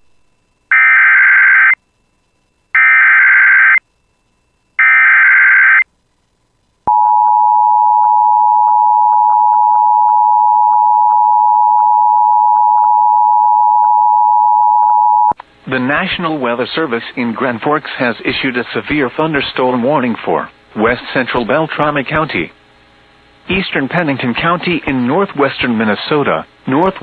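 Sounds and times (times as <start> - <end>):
screeching digital data tones: 4.8 - 5.8.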